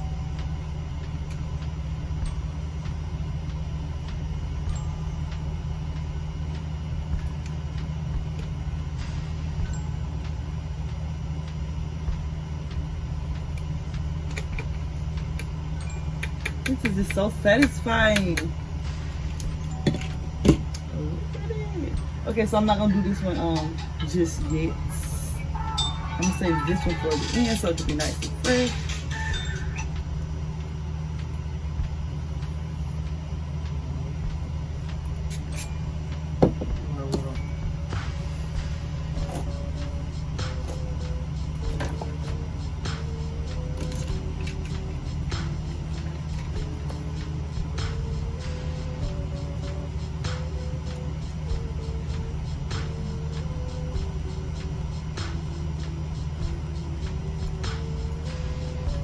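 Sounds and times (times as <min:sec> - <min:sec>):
air conditioner humming: 0:00.0 - 0:59.0
faint clicks: 0:16.2 - 0:17.2.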